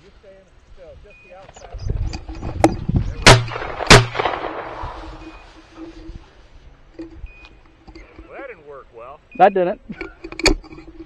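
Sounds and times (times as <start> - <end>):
gunshot echo: 3.2 - 5.4
shotgun shots: 3.2 - 5.4.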